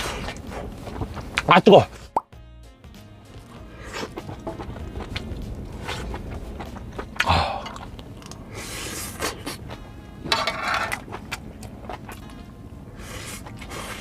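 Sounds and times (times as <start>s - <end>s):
chewing clicks: 5.8s - 8.4s
breathy huffs: 7.2s - 9.7s, 12.8s - 14.0s.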